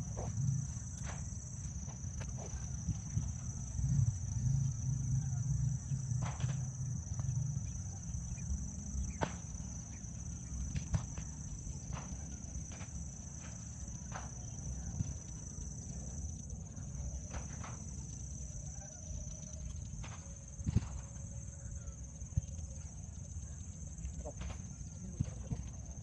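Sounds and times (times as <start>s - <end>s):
high-pitched insect drone: 0.0s - 26.0s.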